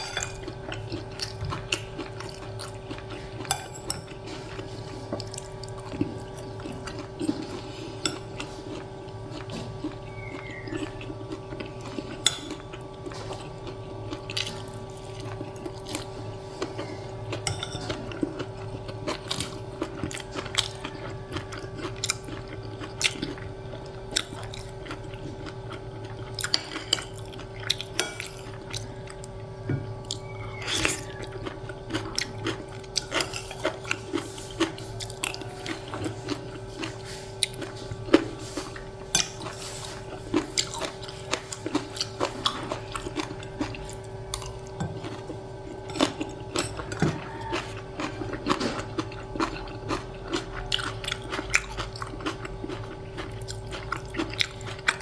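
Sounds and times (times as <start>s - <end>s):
person chewing food: 0.0s - 55.0s
steady low hum: 0.0s - 55.0s.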